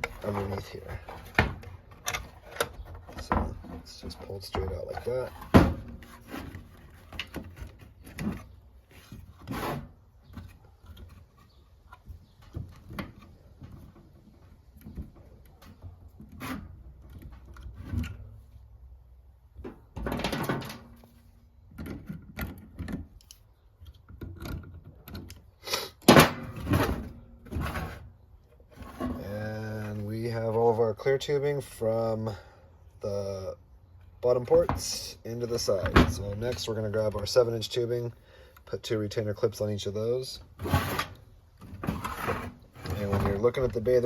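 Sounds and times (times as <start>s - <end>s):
rustling scrapes of plastic tubing: 4.2s - 12.4s, 27.5s - 30.9s, 40.5s - 43.7s.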